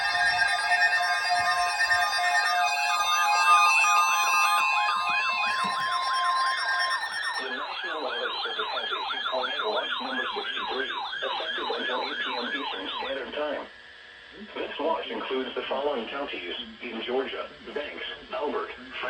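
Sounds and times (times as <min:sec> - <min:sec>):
lower-pitched siren sweep: 0:00.0 - 0:13.2
electronic siren yelping: 0:00.0 - 0:13.3
steady electronic tones: 0:00.0 - 0:13.6.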